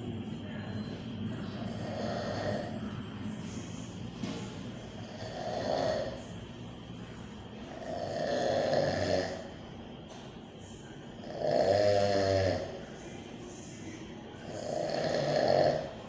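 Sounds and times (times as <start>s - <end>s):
man snoring: 1.5s - 3.1s, 4.9s - 6.3s, 7.7s - 9.6s, 11.2s - 12.8s, 14.4s - 16.0s.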